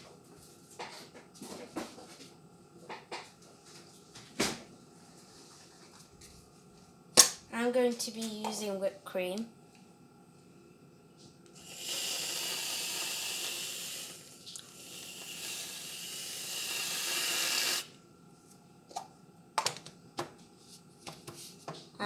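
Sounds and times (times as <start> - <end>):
aerosol can spraying hiss: 11.6 - 17.9.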